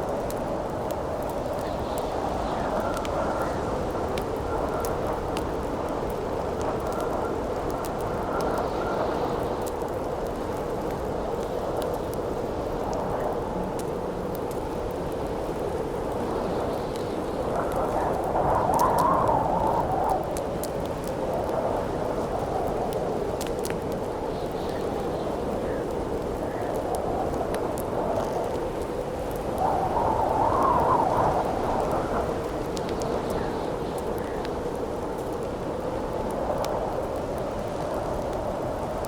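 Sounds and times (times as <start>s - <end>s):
campfire crackling and popping: 0.0s - 39.0s
wind howling: 12.6s - 39.0s.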